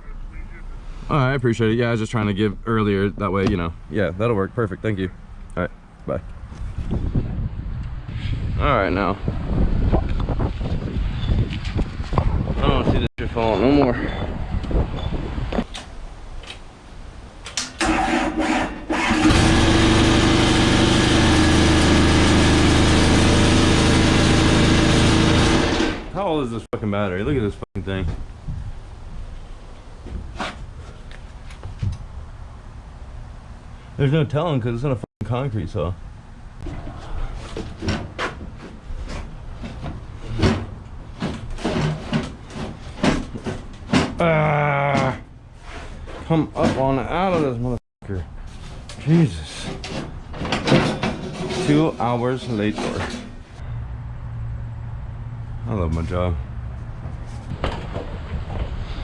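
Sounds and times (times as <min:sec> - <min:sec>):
engine cranking and idling: 0:17.4 - 0:26.2
tools knocking and scraping: 0:36.6 - 0:44.2, 0:48.6 - 0:53.6.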